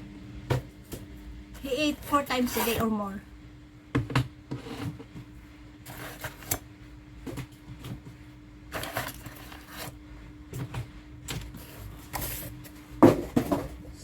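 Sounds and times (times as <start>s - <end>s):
faint hum: 0.0s - 14.0s
packages rustling: 8.7s - 9.9s.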